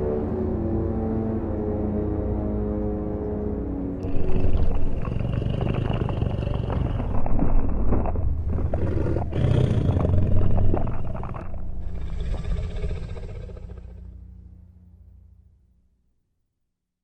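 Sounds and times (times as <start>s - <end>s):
dinosaur roars: 4.0s - 14.1s.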